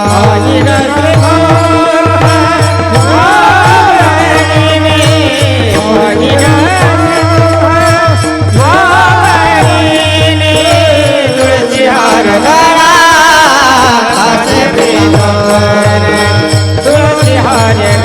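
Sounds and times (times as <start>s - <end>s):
drum strokes: 0.0s - 18.0s
person singing wordless vocal line: 0.0s - 18.0s.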